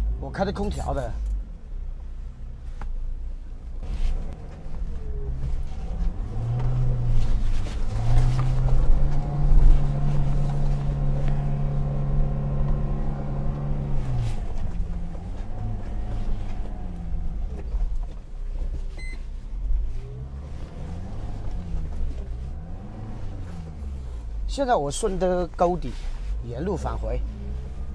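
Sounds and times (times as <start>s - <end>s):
low rumble: 3.3s - 24.5s
off-road vehicle engine revving: 3.8s - 18.0s, 19.8s - 25.3s, 26.2s - 27.9s.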